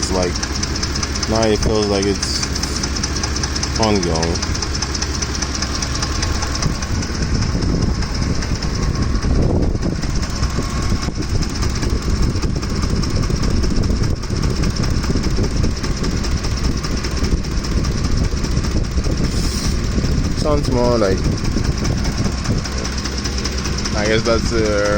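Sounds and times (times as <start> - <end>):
engine running with rapid clatter: 0.0 - 24.9.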